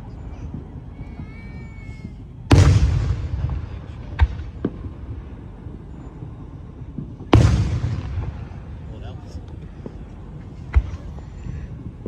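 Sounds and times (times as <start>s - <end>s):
sharp firework cracks: 2.0s - 5.4s, 7.3s - 9.2s
firework shell bursts booming: 2.5s - 5.4s, 7.3s - 9.1s.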